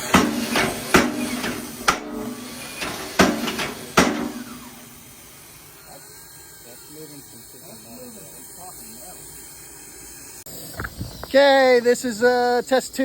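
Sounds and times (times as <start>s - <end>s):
power hammer striking hot metal: 0.0s - 5.6s.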